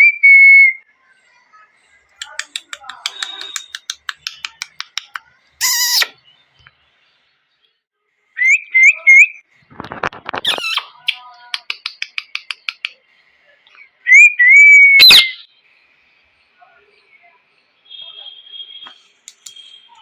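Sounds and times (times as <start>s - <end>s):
parrot clicking chatter: 2.2s - 6.1s, 10.5s - 13.0s
parrot squawking: 3.4s - 6.2s, 10.4s - 11.2s, 15.0s - 15.4s
parrot whistling: 5.6s - 6.2s, 10.5s - 11.0s, 14.1s - 15.4s.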